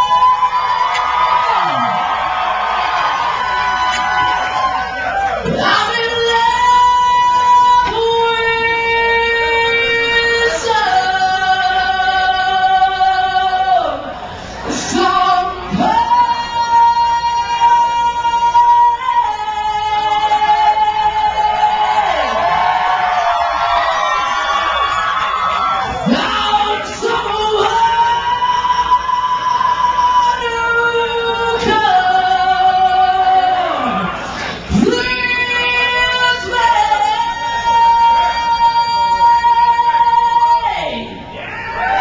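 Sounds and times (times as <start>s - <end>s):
crowd cheering and whooping: 0.0s - 8.0s, 18.9s - 42.0s
woman singing sustained notes: 5.5s - 22.5s.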